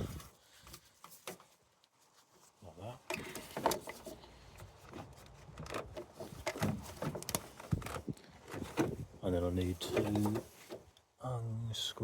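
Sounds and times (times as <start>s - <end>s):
engine parts clicking and rattling: 3.2s - 9.1s.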